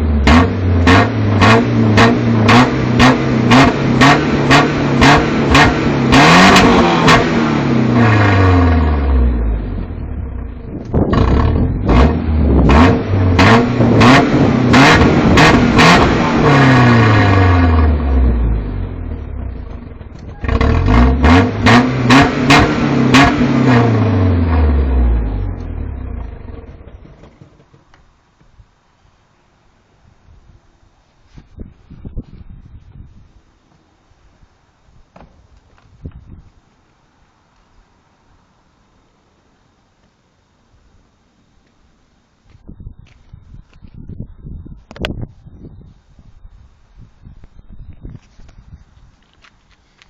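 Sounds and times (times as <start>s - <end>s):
engine revving: 0.0s - 27.3s.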